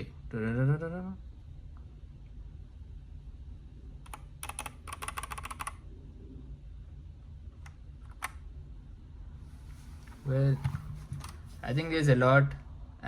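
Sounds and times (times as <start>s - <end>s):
mechanical keyboard keystrokes: 4.1s - 5.8s.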